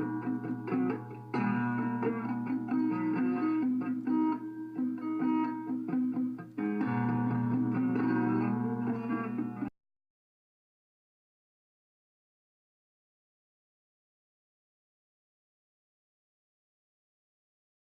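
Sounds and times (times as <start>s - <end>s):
guitar solo plucked notes: 0.0s - 9.7s.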